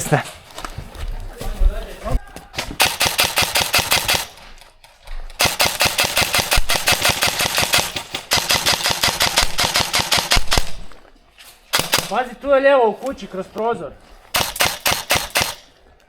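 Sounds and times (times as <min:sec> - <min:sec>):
airsoft rifle firing full-auto: 0:02.8 - 0:04.5, 0:05.4 - 0:11.0, 0:11.7 - 0:12.2, 0:14.3 - 0:15.8.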